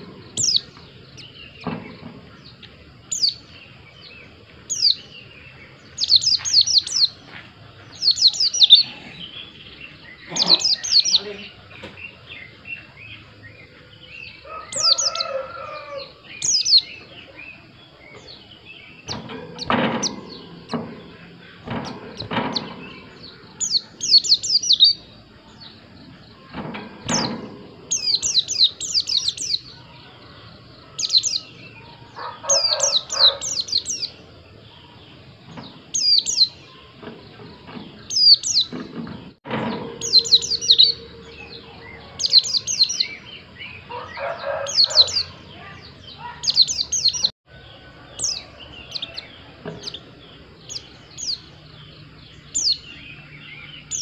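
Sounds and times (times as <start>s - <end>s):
bird twittering: 0.0s - 7.3s, 7.9s - 25.1s, 26.4s - 29.9s, 30.9s - 34.2s, 39.8s - 47.3s
dull knocks: 19.1s - 23.1s.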